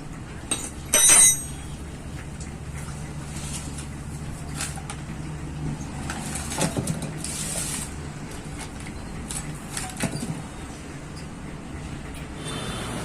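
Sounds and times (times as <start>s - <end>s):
low mechanical hum: 0.0s - 13.0s
metal clinks: 0.5s - 1.6s.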